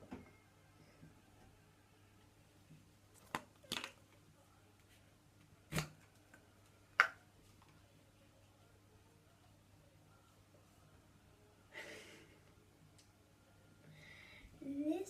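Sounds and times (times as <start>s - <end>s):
faint steady hum: 0.0s - 15.0s.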